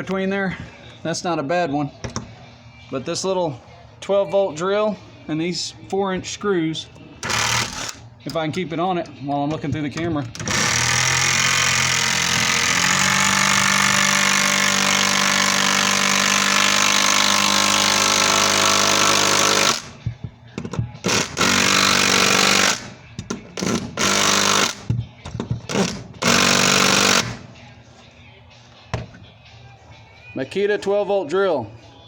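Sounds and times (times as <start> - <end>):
impact driver hammering screw: 7.2 - 8.0, 10.4 - 20.1, 21.0 - 27.4.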